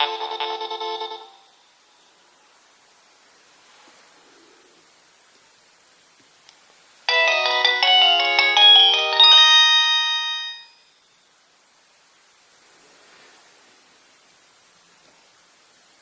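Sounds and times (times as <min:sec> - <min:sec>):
polyphonic phone ringtone: 0:00.0 - 0:01.5, 0:07.1 - 0:10.9.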